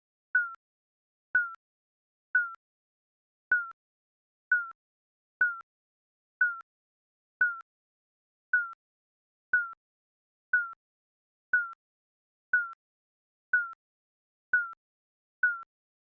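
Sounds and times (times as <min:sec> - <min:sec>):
countdown timer beeps: 0:03.5 - 0:03.7, 0:04.5 - 0:04.8, 0:06.4 - 0:06.6, 0:11.6 - 0:11.8, 0:14.6 - 0:14.8, 0:15.4 - 0:15.7.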